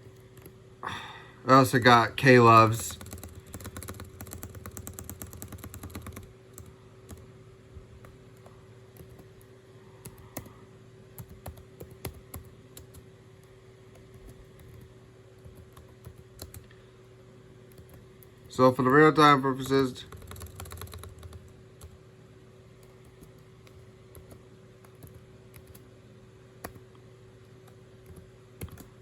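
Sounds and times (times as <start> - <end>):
faint hum: 0.0 - 29.0
keyboard typing: 2.9 - 7.3, 8.0 - 10.5, 11.2 - 16.7, 17.7 - 22.0, 22.8 - 25.8, 26.6 - 26.9, 27.5 - 29.0.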